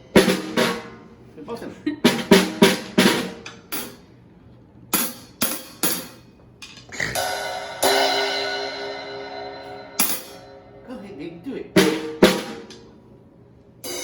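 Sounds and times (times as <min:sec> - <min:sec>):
drum strokes: 0:07.0 - 0:10.8
cymbal ringing: 0:07.2 - 0:11.0.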